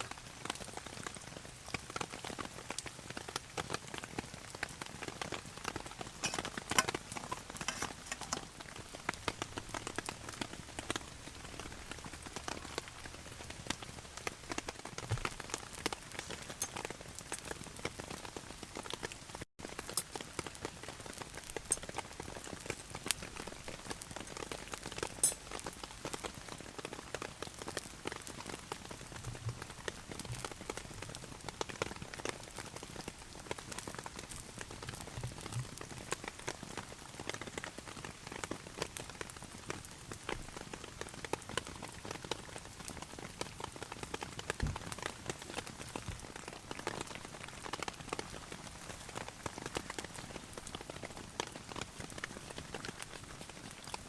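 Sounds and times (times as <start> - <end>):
rain pattering on a tarp: 0.0 - 54.0.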